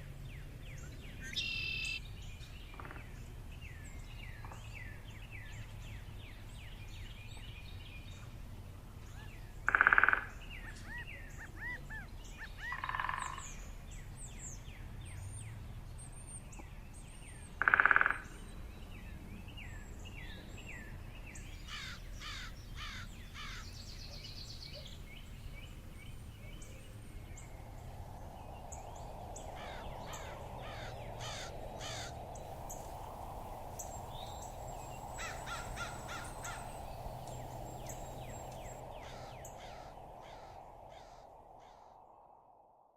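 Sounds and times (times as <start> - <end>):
small birds chirping: 10.2 - 15.4, 18.9 - 41.2
loud bird call: 29.5 - 41.9.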